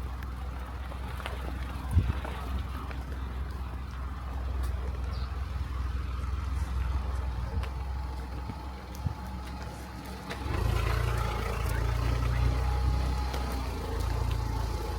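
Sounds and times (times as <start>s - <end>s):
car engine rumble: 0.0s - 14.9s
road noise: 0.0s - 14.9s.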